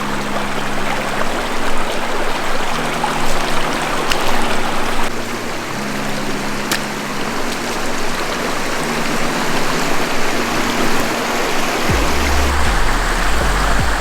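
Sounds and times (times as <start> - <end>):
creek rushing over rocks: 0.0 - 14.0.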